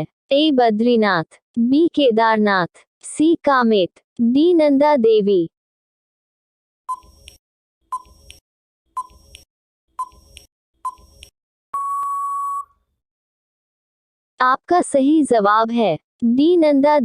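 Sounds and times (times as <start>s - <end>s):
countdown timer beeps: 10.0s - 12.7s
long steady beep: 11.8s - 12.8s.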